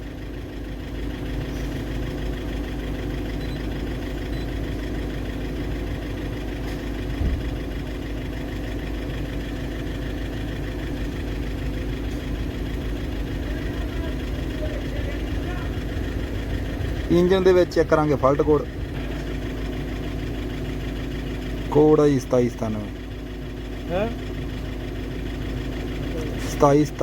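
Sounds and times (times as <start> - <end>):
diesel engine idling with clatter: 0.0 - 27.0.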